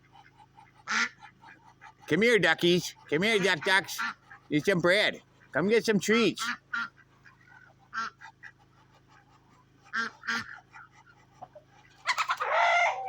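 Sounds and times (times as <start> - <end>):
ducks quacking: 0.0 - 13.0.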